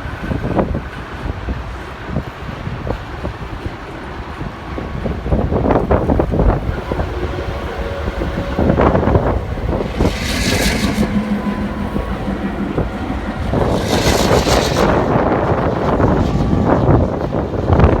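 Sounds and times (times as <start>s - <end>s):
train running: 0.0s - 18.0s
wind buffeting microphone: 0.0s - 18.0s
hissing surges: 5.9s - 16.2s.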